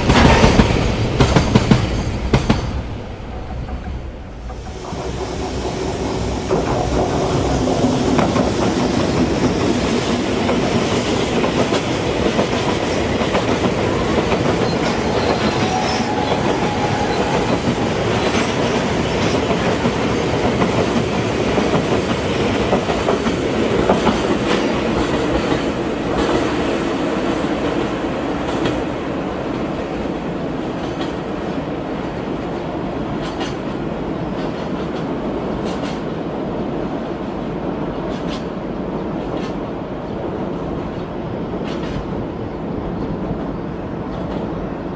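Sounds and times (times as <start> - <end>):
train wheels clattering over rail joints: 0.0 - 26.7, 33.1 - 36.1, 41.4 - 42.3.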